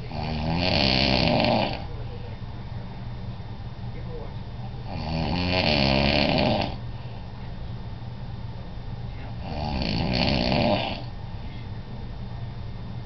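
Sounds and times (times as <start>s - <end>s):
man snoring: 0.0s - 1.9s, 4.8s - 6.8s, 9.4s - 11.1s.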